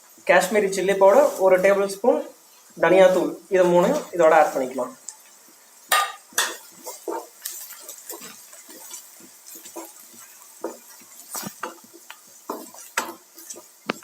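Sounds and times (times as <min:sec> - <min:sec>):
onions frying: 0:00.0 - 0:14.0
spoon scraping in a pan: 0:05.9 - 0:14.0.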